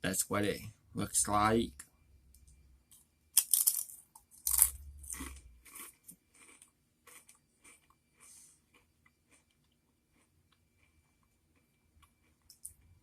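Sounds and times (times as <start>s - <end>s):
potato chip crunching: 3.4s - 10.9s
chewing crunches: 3.4s - 13.0s.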